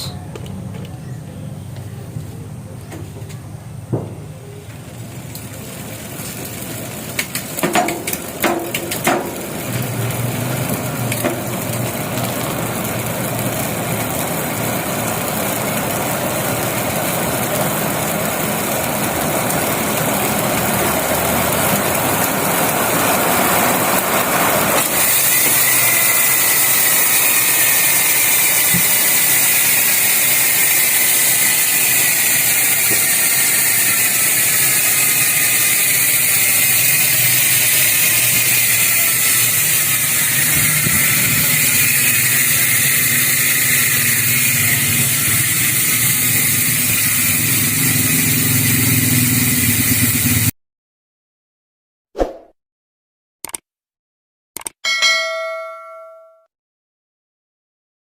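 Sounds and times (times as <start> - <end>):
bicycle hub freewheeling buzz: 4.3 - 50.6
sharp clicks: 53.4 - 53.7, 54.6 - 54.8.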